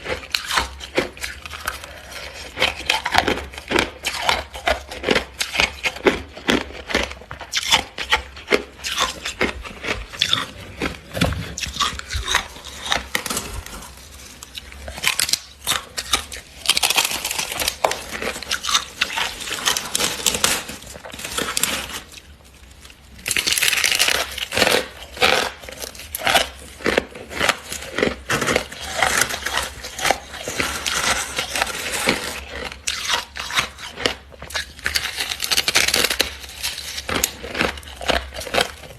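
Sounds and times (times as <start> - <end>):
frost crunching: 0.0 - 38.9.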